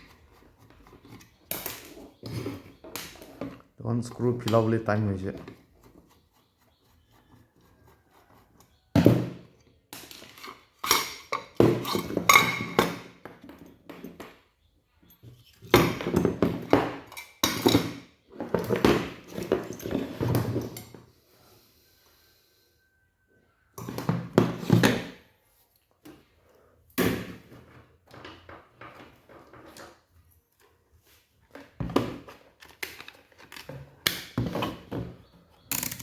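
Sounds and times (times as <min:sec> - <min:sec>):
metal parts and tools clattering: 0:10.0 - 0:14.4, 0:15.0 - 0:21.0, 0:35.7 - 0:36.0.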